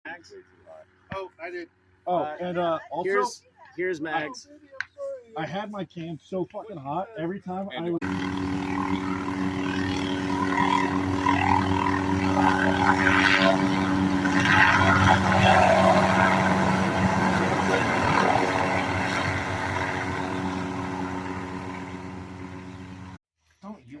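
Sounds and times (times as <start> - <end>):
helicopter running: 8.0 - 23.2.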